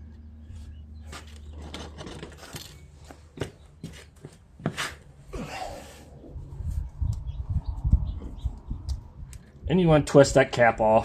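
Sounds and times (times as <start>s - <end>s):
handling knocks and clicks: 1.0s - 4.8s.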